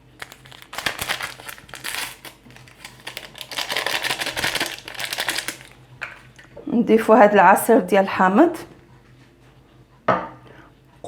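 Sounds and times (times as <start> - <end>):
sachet crinkling and rustling: 0.0 - 6.5.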